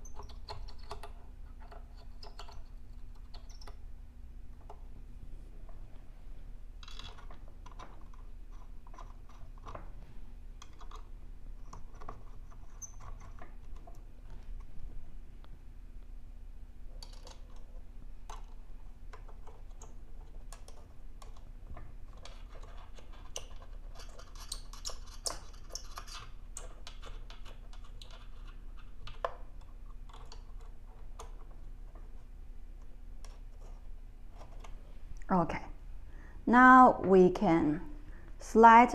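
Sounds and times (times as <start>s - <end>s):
faint steady hum: 0.0s - 38.9s.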